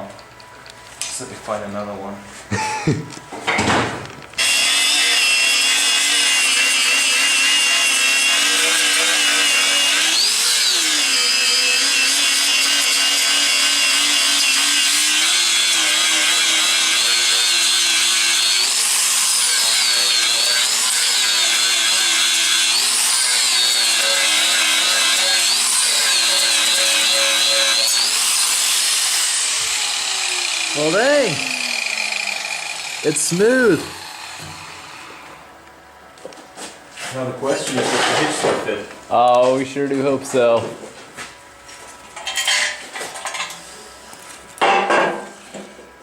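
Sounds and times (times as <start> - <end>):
angle grinder grinding steel: 4.4 - 35.5.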